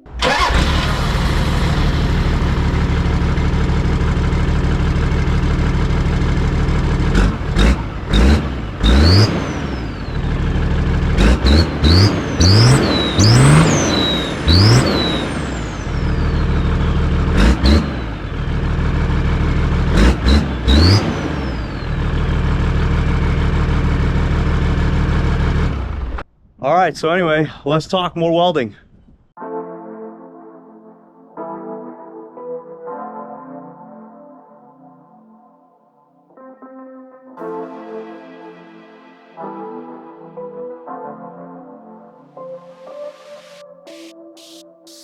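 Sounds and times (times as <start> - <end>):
diesel engine revving: 0.0 - 26.3
turbo whistle: 11.5 - 17.0.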